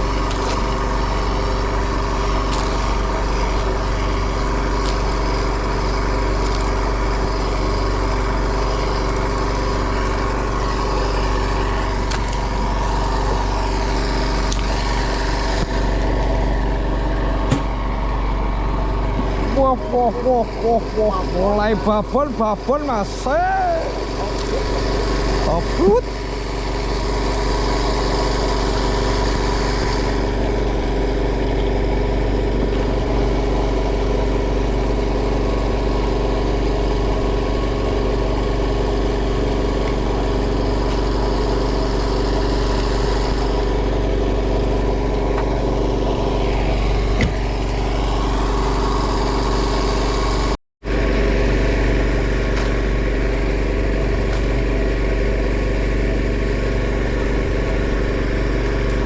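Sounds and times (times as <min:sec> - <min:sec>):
boat engine running: 0:00.0 - 0:59.0.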